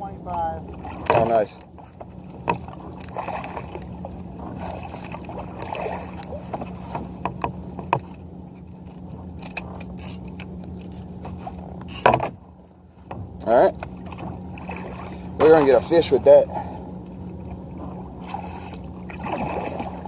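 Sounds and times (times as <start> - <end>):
steady low hum: 0.0 - 20.0
fishing gear clicking and scraping: 6.1 - 12.4.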